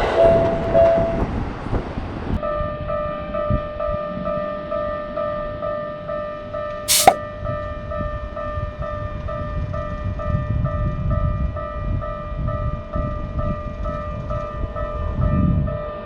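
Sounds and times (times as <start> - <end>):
sharp loud burst: 6.9 - 7.2.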